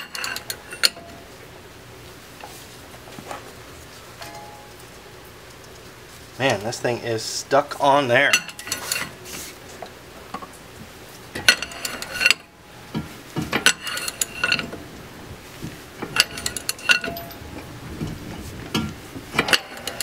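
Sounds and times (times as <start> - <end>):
hand tools clanking on metal parts: 0.0 - 1.2, 4.2 - 4.9, 8.2 - 9.4, 11.3 - 14.8, 16.0 - 20.0.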